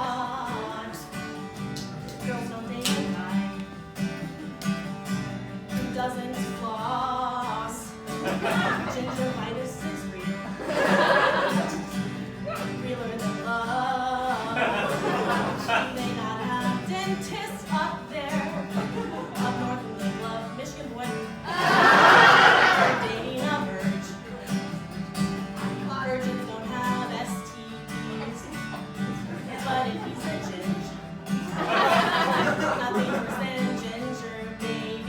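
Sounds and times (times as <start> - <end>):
woman singing: 0.0 - 4.5, 5.5 - 35.0
acoustic guitar: 0.0 - 35.0.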